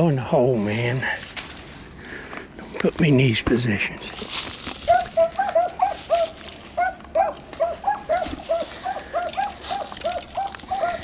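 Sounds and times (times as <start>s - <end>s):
hounds baying: 4.8s - 11.0s.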